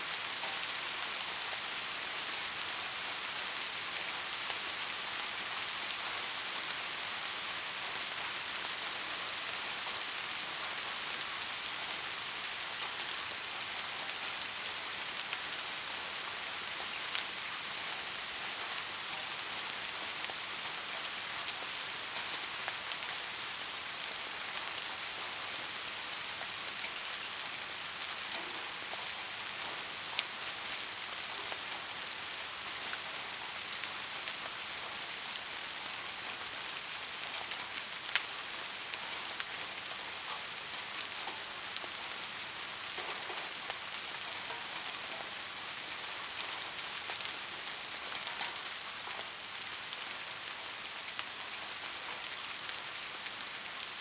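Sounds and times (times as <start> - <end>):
steady rainfall: 0.0 - 54.0
rain drop ticks: 42.8 - 45.6, 48.0 - 49.3.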